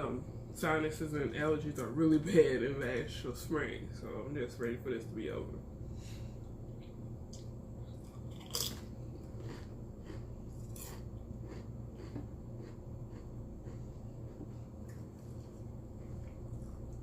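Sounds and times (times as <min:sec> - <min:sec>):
chewing crunchy snack: 0:07.3 - 0:17.0.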